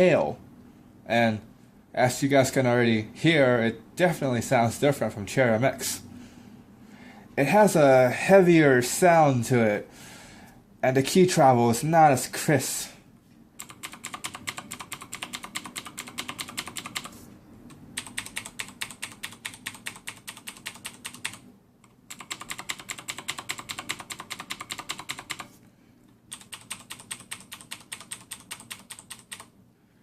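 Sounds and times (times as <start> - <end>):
fast typing on mechanical keyboard: 13.6 - 25.5, 26.3 - 29.5.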